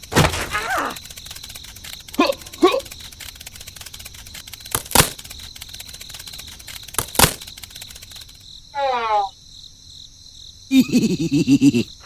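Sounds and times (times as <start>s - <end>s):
fast ticking: 0.0s - 8.4s
sharp clicks: 0.0s - 8.5s.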